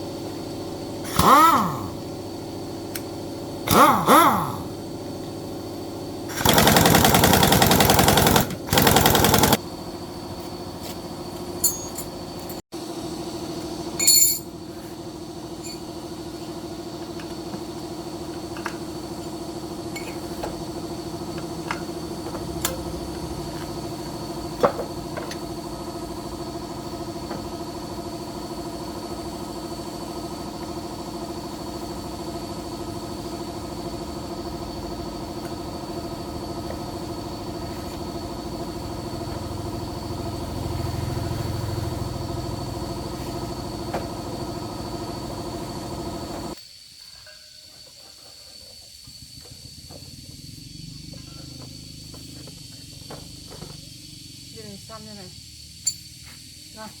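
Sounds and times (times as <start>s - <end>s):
engine humming steadily: 0.0s - 46.6s, 49.4s - 57.0s
rapid hammering power tool: 1.0s - 2.1s, 3.6s - 4.8s, 6.2s - 9.7s.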